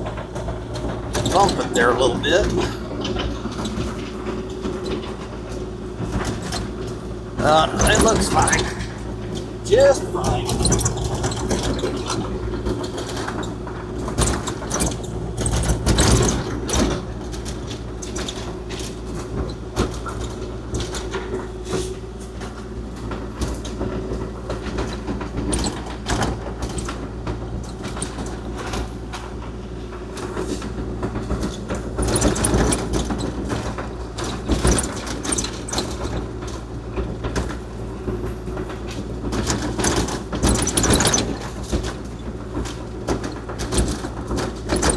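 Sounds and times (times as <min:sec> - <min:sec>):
excavator diesel engine running: 0:00.0 - 0:18.0
machine clanks and rattles: 0:10.6 - 0:44.9.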